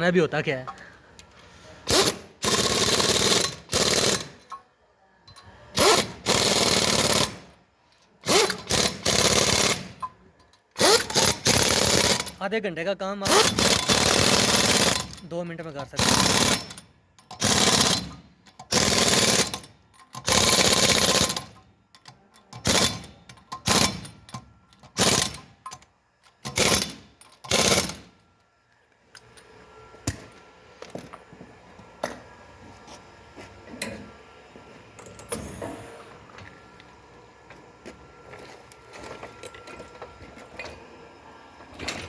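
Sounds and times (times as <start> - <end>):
tools clicking and knocking: 1.9 - 7.2, 13.3 - 28.0
impact wrench hammering: 5.7 - 7.4, 8.2 - 10.2, 10.8 - 12.4, 13.3 - 15.2, 15.8 - 25.8, 26.4 - 28.1.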